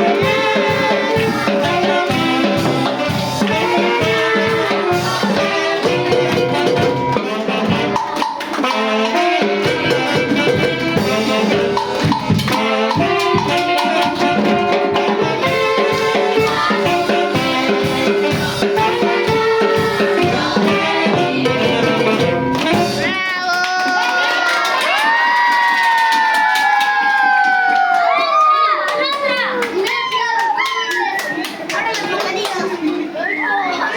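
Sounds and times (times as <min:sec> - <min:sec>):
band playing horns and percussion: 0:00.0 - 0:23.4.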